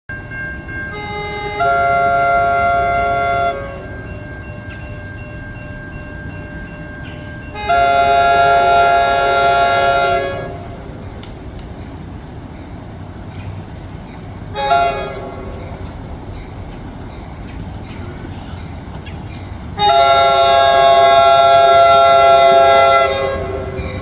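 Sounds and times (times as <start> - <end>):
train low rumble: 0.1 - 24.0
train air horn blasts: 0.9 - 4.0, 7.5 - 10.8, 14.5 - 15.7, 19.8 - 24.0.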